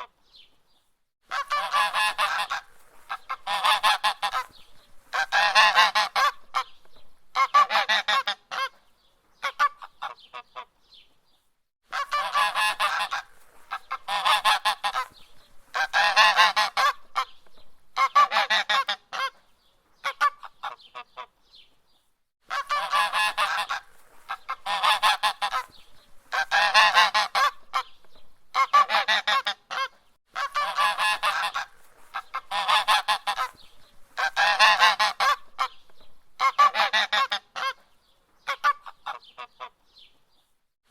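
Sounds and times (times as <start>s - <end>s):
goose honking: 1.3s - 6.7s, 7.3s - 8.7s, 11.9s - 17.3s, 18.0s - 19.4s, 22.5s - 27.9s, 28.5s - 35.8s, 36.4s - 37.8s.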